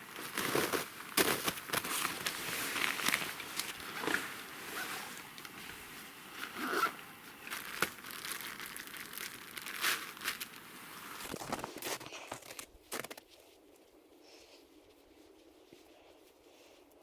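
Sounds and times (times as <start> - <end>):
crinkling and rustling: 0.0 - 14.0.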